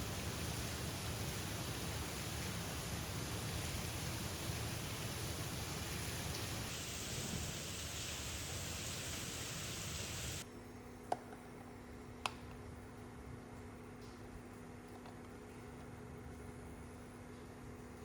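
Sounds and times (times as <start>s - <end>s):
steady rushing hiss: 0.0s - 10.4s
low steady hum: 0.0s - 18.0s.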